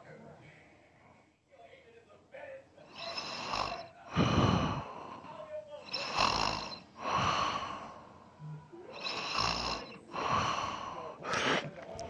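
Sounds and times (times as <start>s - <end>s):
man snoring: 2.9s - 5.2s, 5.9s - 8.0s, 9.0s - 11.7s
short sharp breath: 10.2s - 11.7s.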